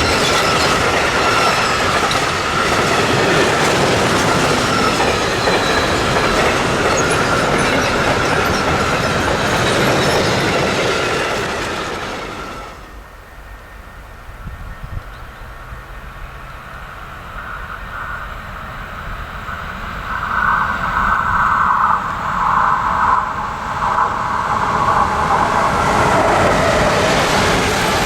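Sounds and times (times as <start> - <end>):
train rumbling: 0.0 - 28.0.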